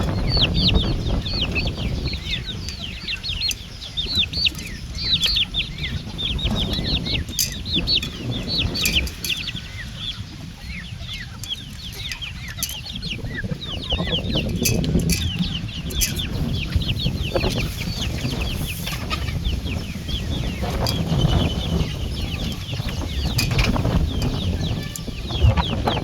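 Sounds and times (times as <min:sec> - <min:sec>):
chicks peeping: 0:00.0 - 0:26.0.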